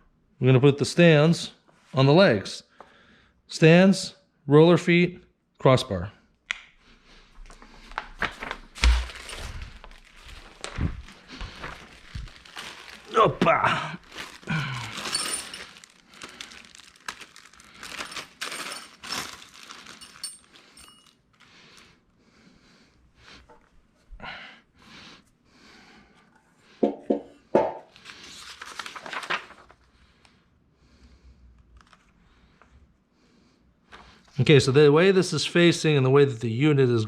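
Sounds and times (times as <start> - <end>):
packaging crinkling and tearing: 7.5 - 21.5, 27.9 - 29.9
metal parts knocking and clinking: 15.0 - 15.8, 18.0 - 21.1.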